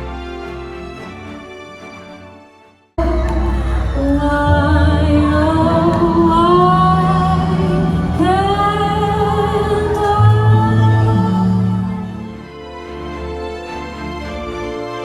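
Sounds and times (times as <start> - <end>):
background music with woman singing: 3.0 - 12.5.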